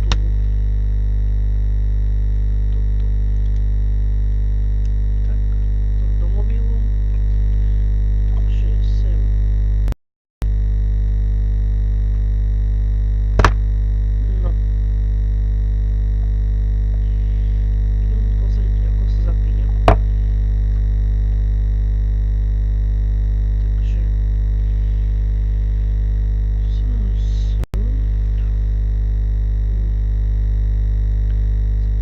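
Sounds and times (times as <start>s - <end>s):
electrical buzzing hum: 0.0s - 32.0s
sharp click: 13.4s - 13.6s.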